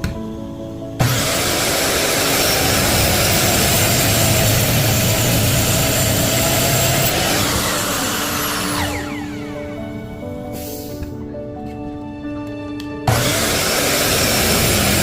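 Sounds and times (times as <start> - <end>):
power saw cutting wood: 1.0 - 11.0, 13.0 - 15.0.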